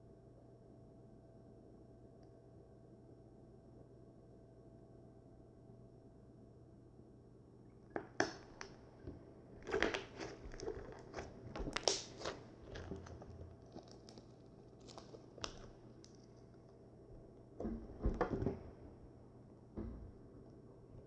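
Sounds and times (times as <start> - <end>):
slime crackling and popping: 9.6 - 16.8.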